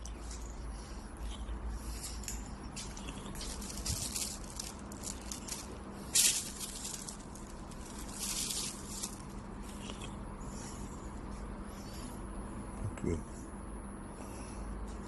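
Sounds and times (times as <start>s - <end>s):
machine low hum: 0.0s - 15.0s
hissing rustling bursts: 1.9s - 9.3s.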